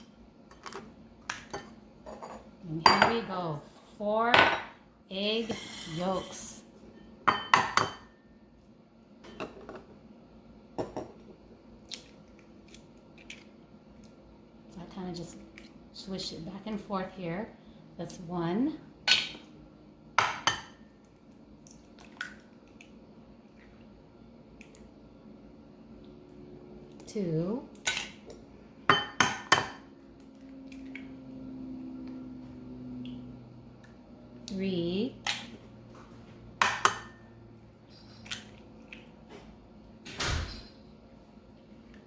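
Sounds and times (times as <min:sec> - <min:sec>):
small clicks and drips: 0:21.0 - 0:23.9, 0:24.5 - 0:24.9, 0:38.2 - 0:39.2.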